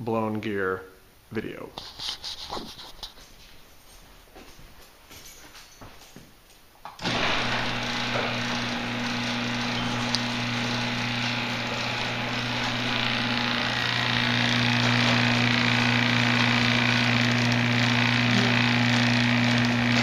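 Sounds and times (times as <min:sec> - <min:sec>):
small electric motor whirring: 0:07.0 - 0:20.0.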